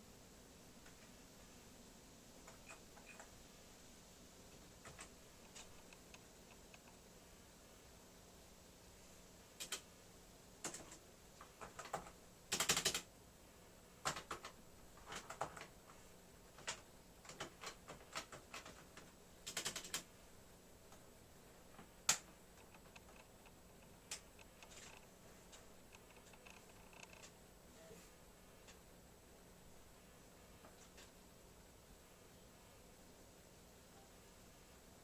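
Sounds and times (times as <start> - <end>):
typewriter keys clicking: 9.6 - 9.8, 10.6 - 13.1, 14.0 - 15.7, 16.6 - 20.0.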